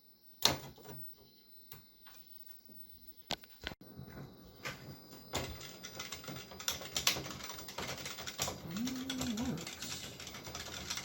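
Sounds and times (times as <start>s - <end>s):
keyboard keys clicking: 5.4s - 11.0s.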